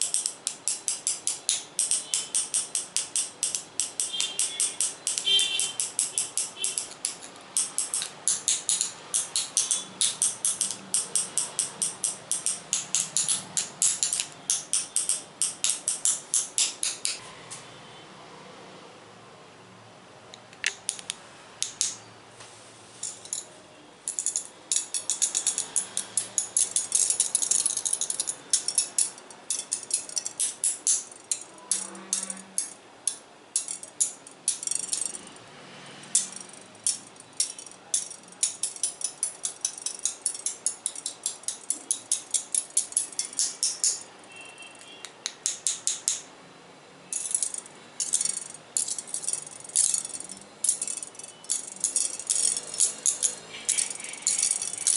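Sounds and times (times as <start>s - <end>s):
tapping on small hard objects: 47.2s - 54.9s.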